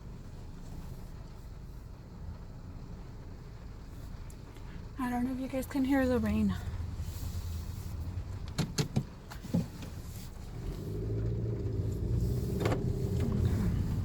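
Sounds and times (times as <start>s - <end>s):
low motor hum: 0.0s - 14.0s
sharp clicks in car: 8.3s - 10.8s, 11.8s - 13.6s.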